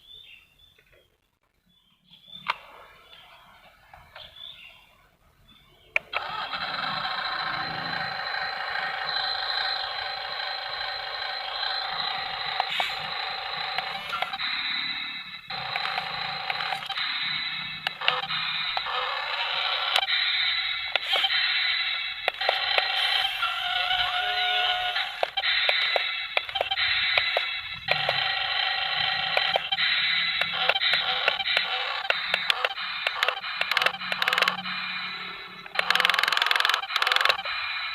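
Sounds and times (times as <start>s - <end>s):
sharp clicks and ticks: 5.9s - 37.9s
toy gear motors whining: 6.0s - 37.9s.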